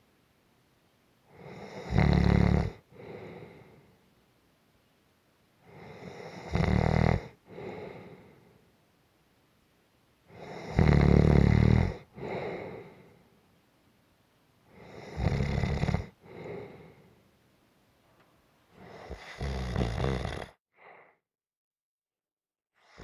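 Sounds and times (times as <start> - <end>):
person snoring: 1.3 - 3.8, 5.7 - 8.3, 10.4 - 13.0, 14.7 - 17.1, 18.8 - 21.0
soft breath out: 2.9 - 4.1, 7.5 - 8.7, 12.1 - 13.4, 16.2 - 17.3, 20.7 - 21.2.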